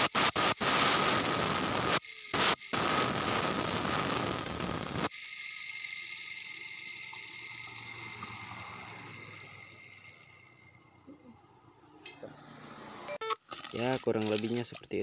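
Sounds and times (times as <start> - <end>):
loud rushing hiss: 0.0 - 5.1
bearing spinning down whir: 1.7 - 13.2.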